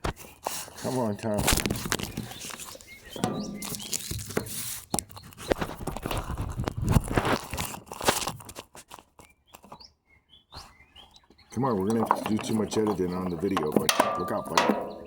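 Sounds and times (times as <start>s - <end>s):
rustling and crunching: 0.1s - 9.2s
sharp knocks and clicks: 3.1s - 4.6s, 11.8s - 15.0s.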